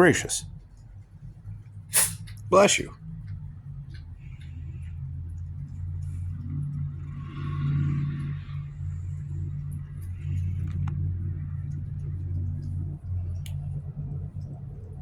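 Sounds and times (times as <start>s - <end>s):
low rumbling hum: 0.0s - 15.0s
hiss: 1.9s - 2.4s.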